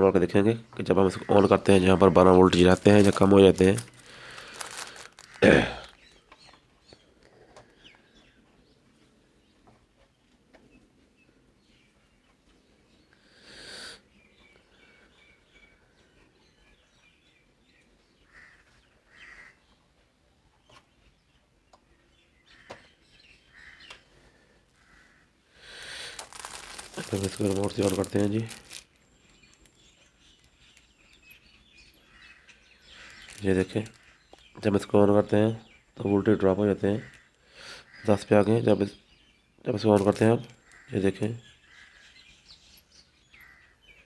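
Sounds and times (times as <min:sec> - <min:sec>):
birds chirping: 0:00.0 - 0:08.9, 0:25.6 - 0:44.0
brief rustle: 0:02.5 - 0:06.0, 0:25.8 - 0:31.4.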